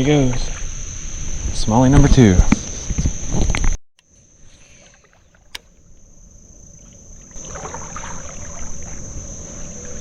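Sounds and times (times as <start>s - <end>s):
high-pitched insect drone: 0.0s - 10.0s
sharp click: 5.5s - 5.8s.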